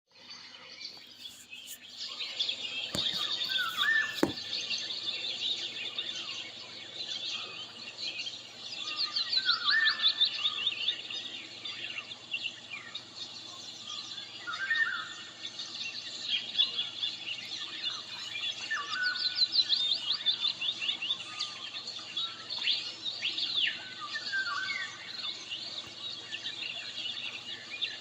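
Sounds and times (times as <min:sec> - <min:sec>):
many birds chirping: 0:00.1 - 0:28.0.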